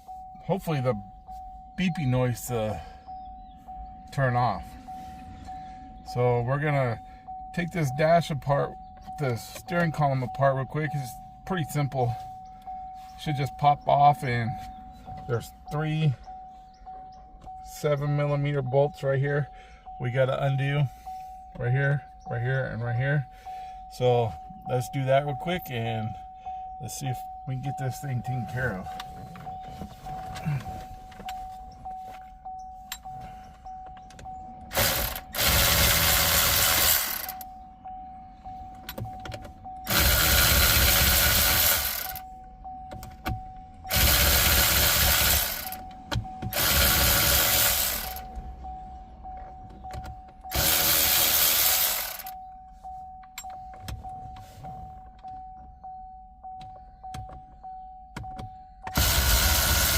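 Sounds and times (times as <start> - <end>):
steady high warning tone: 0.0 - 59.9
cordless power driver running: 34.7 - 37.4, 39.9 - 42.2, 43.9 - 45.8, 46.5 - 48.3, 50.5 - 52.3, 58.9 - 59.9.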